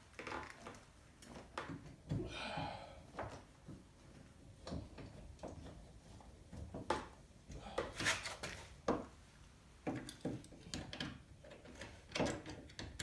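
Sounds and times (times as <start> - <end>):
scraping rub: 7.9 - 8.7.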